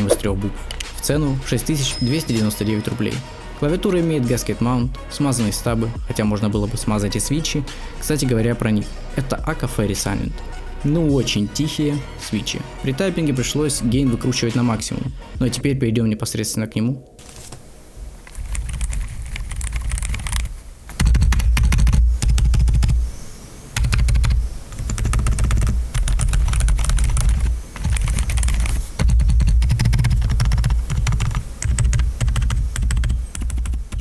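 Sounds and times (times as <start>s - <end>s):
mechanical keyboard typing: 18.3s - 23.0s, 23.8s - 34.0s.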